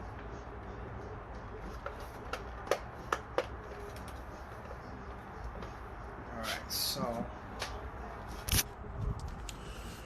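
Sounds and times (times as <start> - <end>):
plastic parts clicking and knocking: 1.8 - 4.2.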